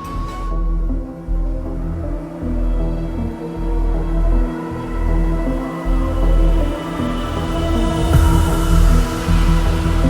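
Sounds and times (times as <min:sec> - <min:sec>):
eerie background music: 0:00.0 - 0:10.0.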